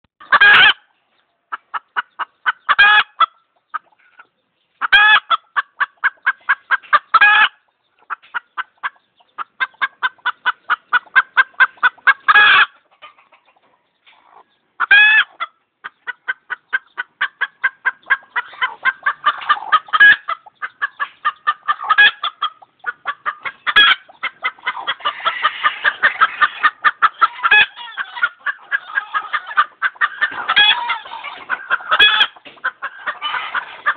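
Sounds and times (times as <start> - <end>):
chicken clucking: 0.2 - 33.9
chicken screeching call: 23.7 - 33.9.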